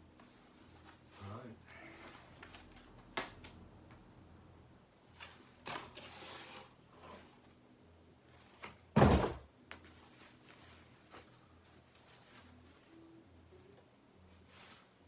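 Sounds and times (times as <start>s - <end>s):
packaging rustling: 2.0s - 3.5s
loud thump: 9.0s - 9.4s.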